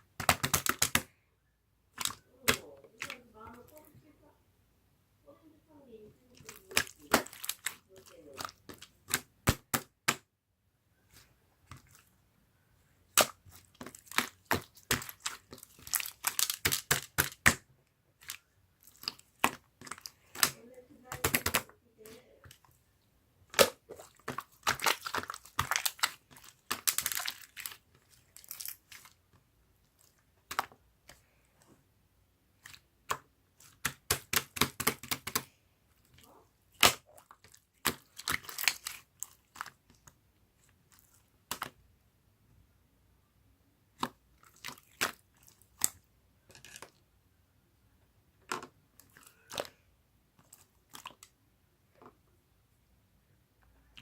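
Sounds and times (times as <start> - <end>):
crunching and crackling clicks: 6.4 - 9.7, 13.1 - 17.6, 23.5 - 31.4, 32.6 - 41.7.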